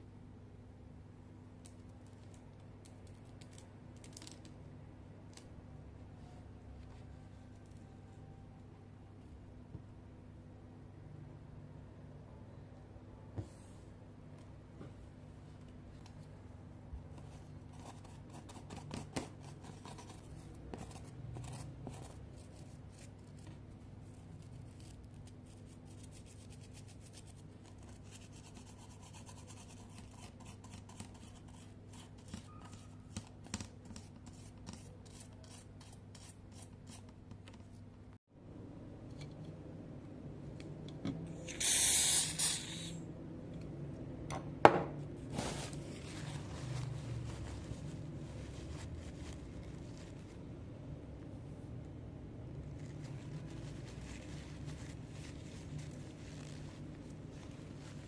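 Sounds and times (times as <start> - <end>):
low steady hum: 0.0 - 41.6, 42.2 - 58.0
spray hiss: 41.5 - 43.0.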